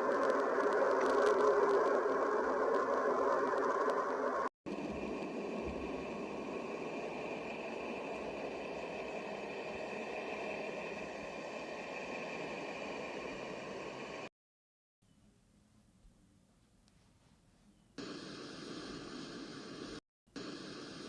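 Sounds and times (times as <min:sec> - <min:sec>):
rushing drone: 0:00.0 - 0:14.3.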